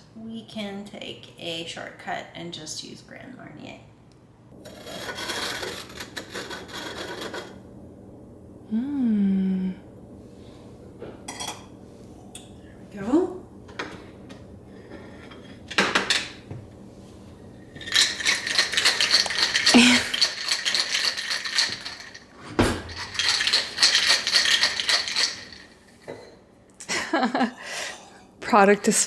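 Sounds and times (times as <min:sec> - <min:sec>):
ice rattling in cocktail shaker: 0:04.7 - 0:07.6, 0:17.6 - 0:26.0.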